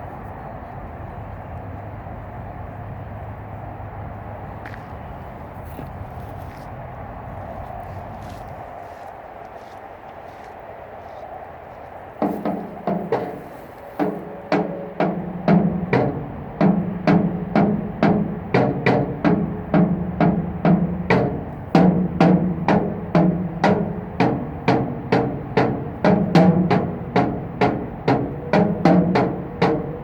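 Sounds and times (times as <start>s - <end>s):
sticks drumming on metal: 12.2s - 30.0s.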